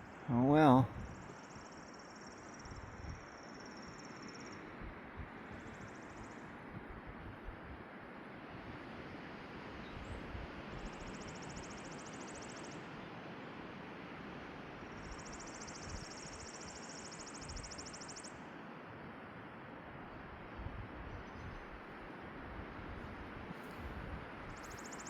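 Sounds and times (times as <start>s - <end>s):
wind buffeting microphone: 0.9s - 1.3s, 20.6s - 24.8s.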